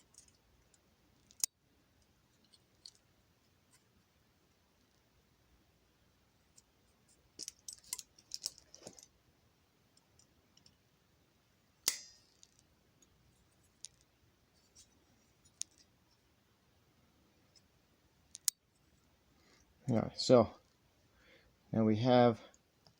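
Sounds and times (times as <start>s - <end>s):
small metal parts clinking: 0.0s - 1.5s, 7.4s - 9.1s
sharp metal click ringing: 11.9s - 12.5s.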